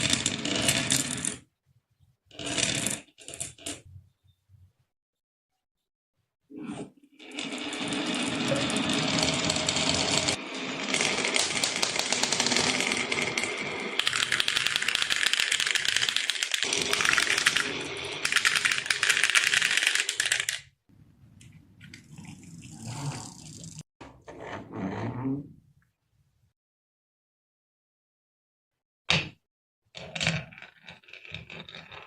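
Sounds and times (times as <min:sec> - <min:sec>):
marbles clattering down wooden track: 0:07.4 - 0:20.7.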